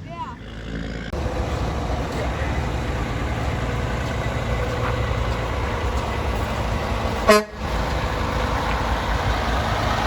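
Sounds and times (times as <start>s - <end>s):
road traffic rumble: 0.0s - 10.0s
truck horn toot: 7.2s - 7.7s.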